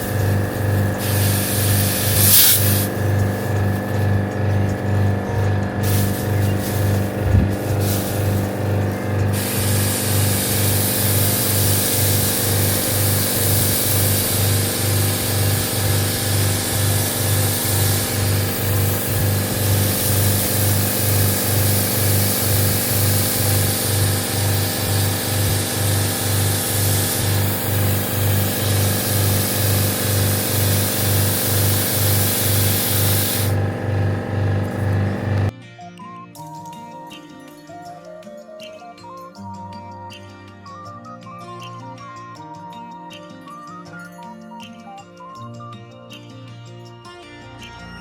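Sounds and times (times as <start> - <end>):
pressure washer pump humming: 0.0 - 35.5
water jet spraying: 0.0 - 35.5.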